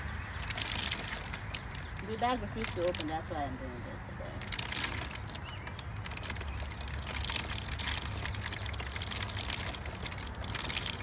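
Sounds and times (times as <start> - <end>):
plastic bag rustling: 0.2 - 11.0.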